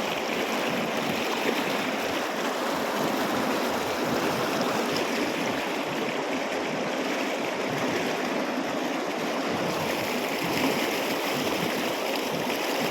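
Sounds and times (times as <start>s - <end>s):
water rushing over rocks: 0.0s - 12.9s.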